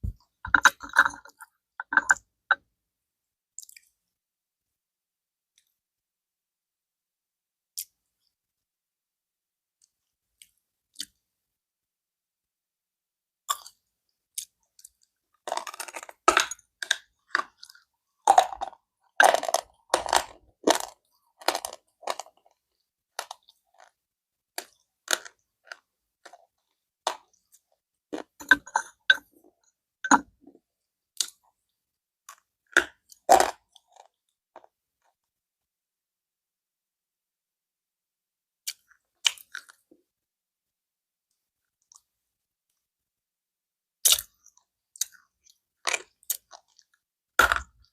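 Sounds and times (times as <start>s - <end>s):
slate pencils being chewed: 14.4s - 22.6s, 28.2s - 29.3s.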